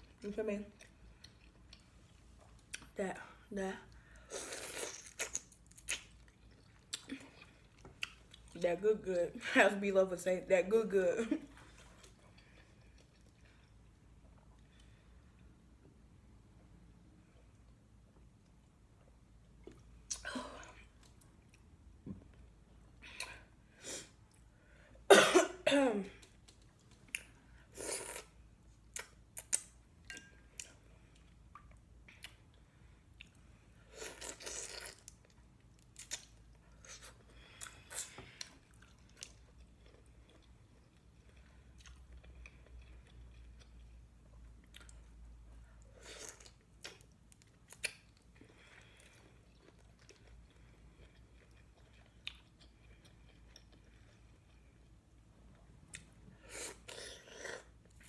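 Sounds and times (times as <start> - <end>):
wet chewing and mouth noises: 3.9 - 8.6, 11.6 - 14.9, 26.2 - 58.0
person coughing: 25.1 - 26.1.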